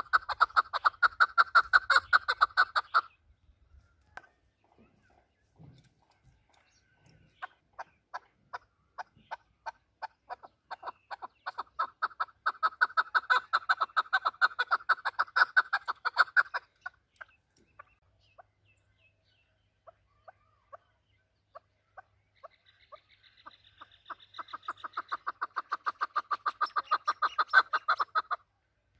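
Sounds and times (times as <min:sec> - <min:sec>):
partridge clucking call: 0:00.0 - 0:03.2, 0:05.6 - 0:18.5, 0:21.5 - 0:28.5.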